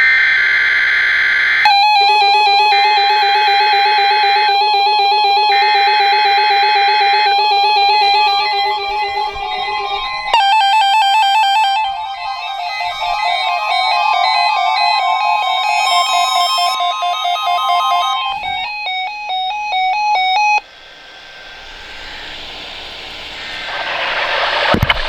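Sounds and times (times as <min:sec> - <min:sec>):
screeching data tones: 0:00.0 - 0:25.0
synthesizer and keyboard music: 0:01.7 - 0:20.7.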